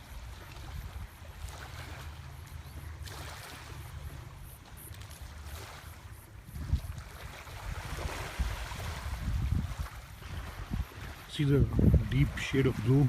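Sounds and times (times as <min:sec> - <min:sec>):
wind buffeting microphone: 0:00.0 - 0:01.9, 0:05.5 - 0:13.0
small waves rippling: 0:00.0 - 0:13.0.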